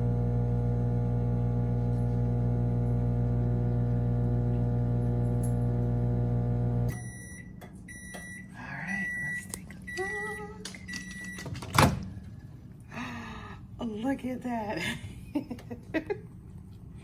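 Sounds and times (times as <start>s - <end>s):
microwave oven humming: 0.0s - 12.8s.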